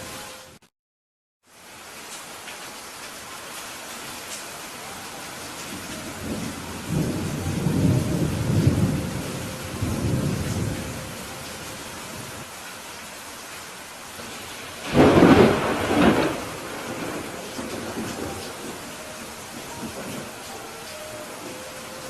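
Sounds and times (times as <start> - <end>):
steady rain: 0.0 - 0.6, 1.4 - 22.0
rolling thunder rumble: 5.7 - 12.4, 14.3 - 20.6
sharp thunderclap: 14.8 - 18.7.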